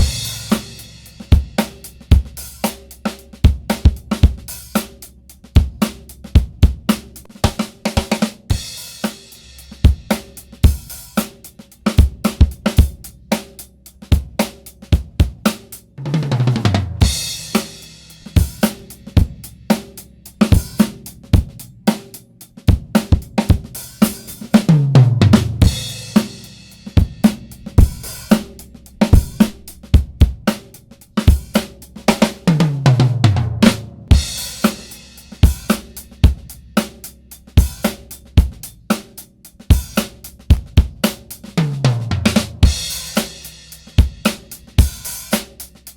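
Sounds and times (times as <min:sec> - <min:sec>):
crash cymbal: 0:00.0 - 0:06.3, 0:25.5 - 0:32.8, 0:33.7 - 0:40.1
tom fill: 0:00.0 - 0:45.7
drum kit groove: 0:00.0 - 0:45.9.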